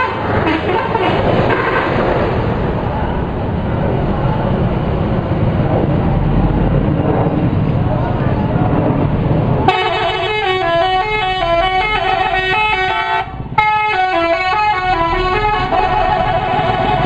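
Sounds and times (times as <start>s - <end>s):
musical air horns melody: 0.0s - 1.9s, 9.7s - 17.0s
low engine rumble: 0.0s - 17.0s.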